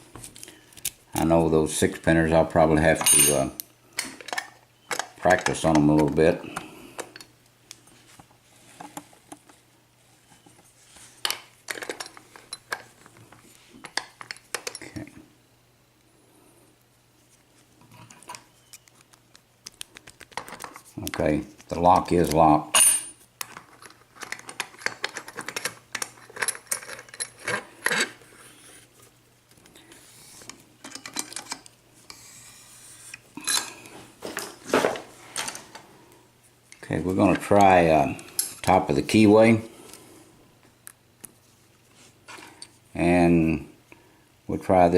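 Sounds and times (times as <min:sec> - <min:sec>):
lock clicking and rattling: 0:23.4 - 0:28.1.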